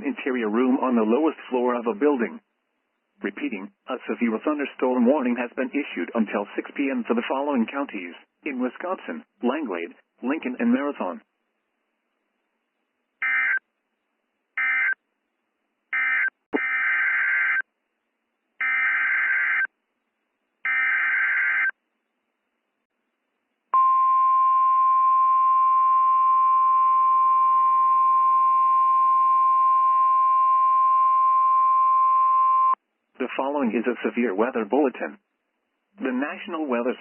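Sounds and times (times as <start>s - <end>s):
steady warning alarm tone: 20.7s - 21.7s.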